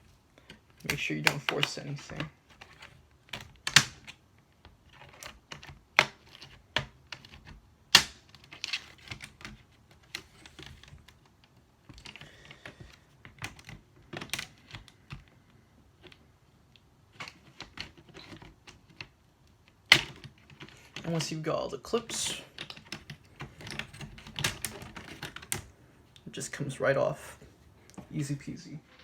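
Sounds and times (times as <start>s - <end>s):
plastic clips snapping loose: 5.1s - 9.5s, 22.6s - 25.7s.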